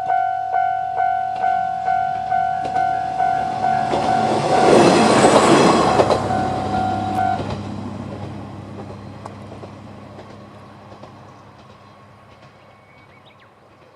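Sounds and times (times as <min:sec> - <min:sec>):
level crossing warning bell: 0:00.0 - 0:07.6
diesel railcar engine drone: 0:00.0 - 0:13.9.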